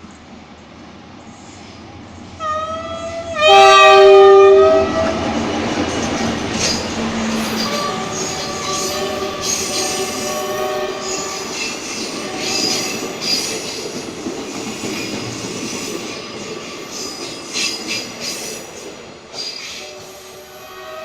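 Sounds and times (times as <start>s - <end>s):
train rumbling: 0.0s - 21.0s
multi-note train horn: 2.4s - 5.3s, 7.1s - 11.5s, 19.8s - 21.0s
train wheels squealing on rails: 6.0s - 21.0s.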